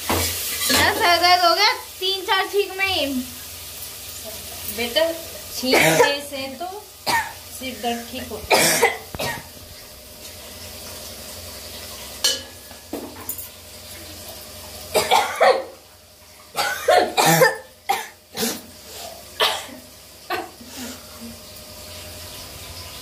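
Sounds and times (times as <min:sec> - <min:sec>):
person coughing: 0:05.7 - 0:06.2, 0:08.5 - 0:09.5, 0:15.0 - 0:15.7, 0:16.6 - 0:18.6, 0:19.4 - 0:21.0.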